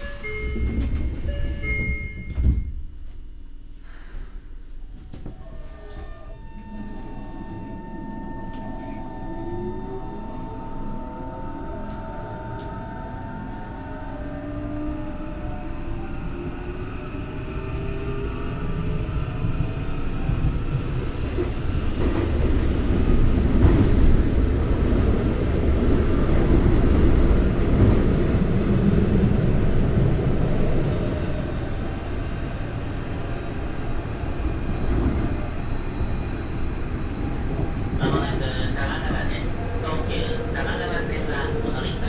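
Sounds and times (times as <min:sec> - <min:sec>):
train wheels rumbling on rails: 0:00.0 - 0:02.9, 0:13.6 - 0:42.0.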